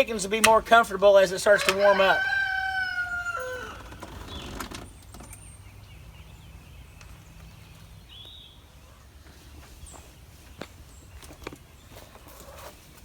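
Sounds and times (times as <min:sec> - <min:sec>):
rooster crowing: 0:01.5 - 0:04.4.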